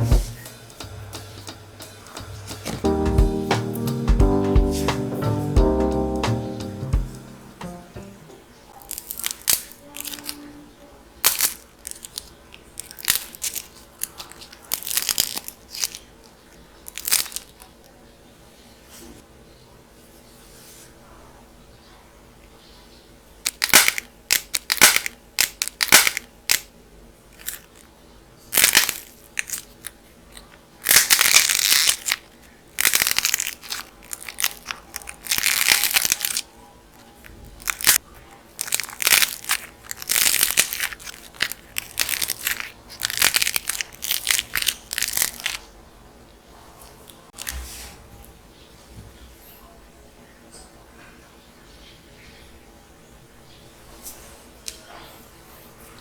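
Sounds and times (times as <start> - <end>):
dried clay cracking and crumbling: 8.7 - 18.0, 23.4 - 26.7, 28.5 - 45.8.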